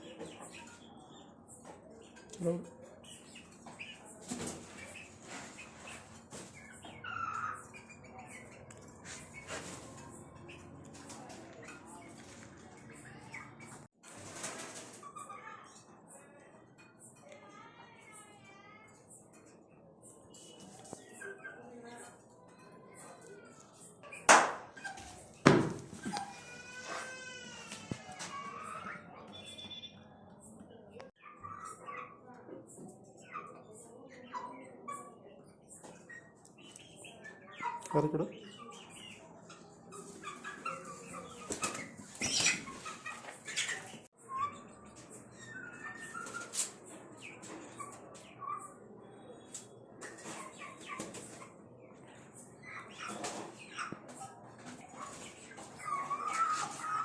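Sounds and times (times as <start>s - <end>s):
chicks cheeping: 0.0s - 13.9s, 18.8s - 57.0s
wings flapping and scuffling: 3.6s - 7.1s, 8.7s - 12.8s, 14.0s - 15.4s, 24.3s - 28.9s, 40.0s - 44.1s, 45.8s - 48.3s, 53.0s - 57.0s.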